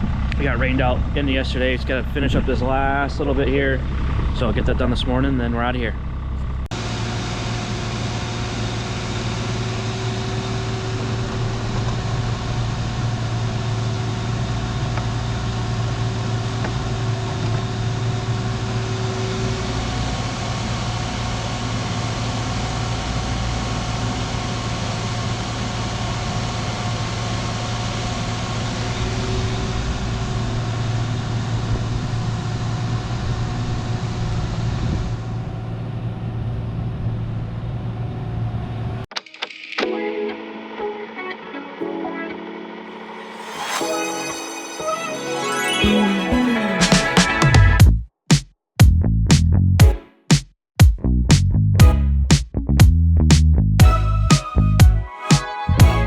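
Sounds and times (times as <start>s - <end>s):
diesel engine running: 0.0s - 36.9s
high steady tone: 42.8s - 47.8s.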